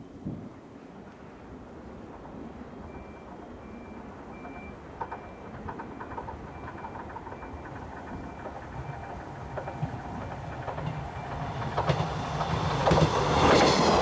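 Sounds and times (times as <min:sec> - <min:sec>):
train rumbling: 0:01.5 - 0:14.0
wheels clattering over rail joints: 0:04.2 - 0:14.0.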